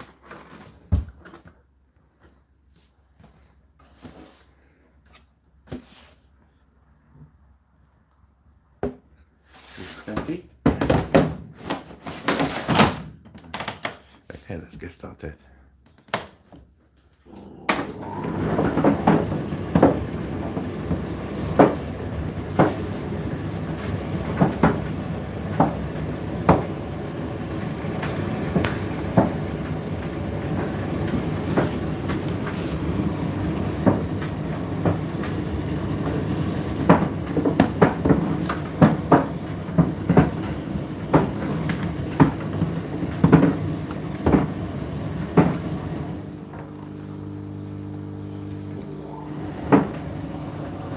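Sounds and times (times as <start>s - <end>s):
tumble dryer motor hum: 17.3s - 50.9s.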